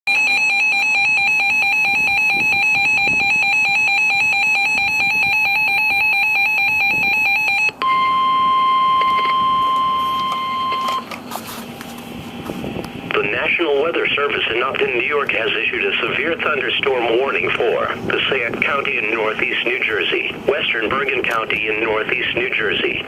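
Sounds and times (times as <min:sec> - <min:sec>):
warbling electronic alarm tone: 0:00.1 - 0:11.1
single steady tone: 0:03.8 - 0:11.2.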